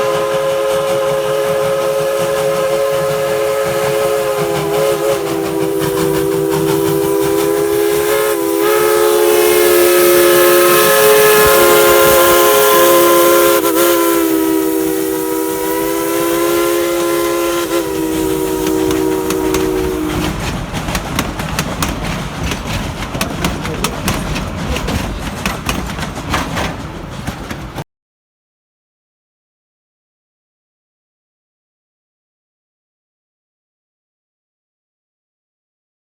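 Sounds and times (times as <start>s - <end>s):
steam locomotive whistle chord: 0.0s - 20.4s
steam hissing with rapid clicking: 0.1s - 12.8s, 13.5s - 27.8s.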